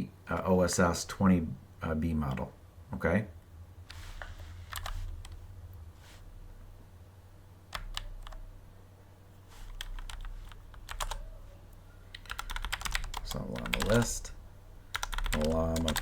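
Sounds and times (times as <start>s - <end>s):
low steady hum: 0.0s - 16.0s
computer keyboard typing: 4.7s - 5.4s, 7.7s - 8.4s, 9.7s - 11.2s, 12.1s - 14.3s, 14.9s - 16.0s.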